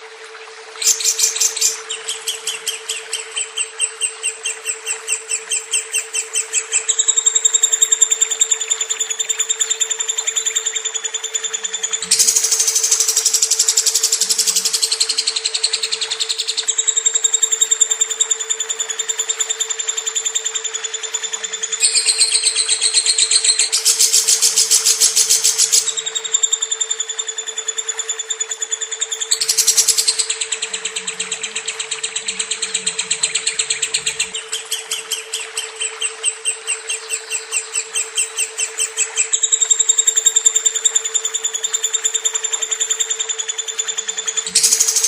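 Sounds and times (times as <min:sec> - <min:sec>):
bird chattering song: 0:00.8 - 0:45.0
steady low hum: 0:28.6 - 0:39.7.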